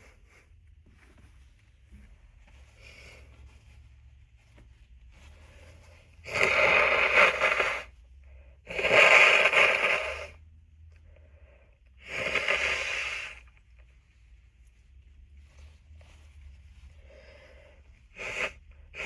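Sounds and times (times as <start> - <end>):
person blowing nose: 6.2 - 7.9, 8.7 - 10.4, 12.0 - 13.5, 18.1 - 19.0.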